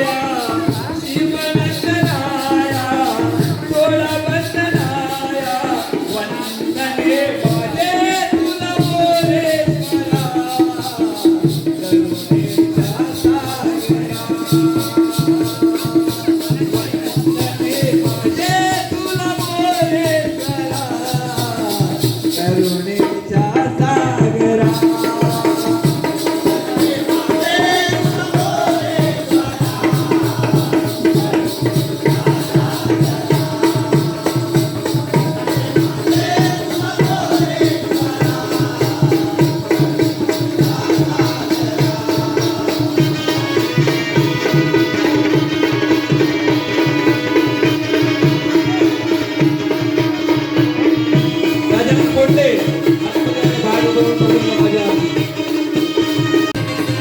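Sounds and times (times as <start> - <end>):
fast hand-drumming: 0.0 - 57.0.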